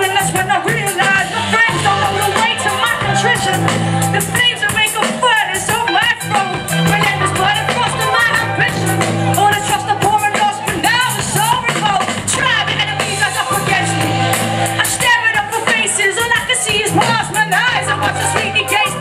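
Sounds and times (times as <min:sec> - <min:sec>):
drums: 0:00.0 - 0:19.0
heavy bass line: 0:00.0 - 0:19.0
person singing: 0:00.0 - 0:19.0.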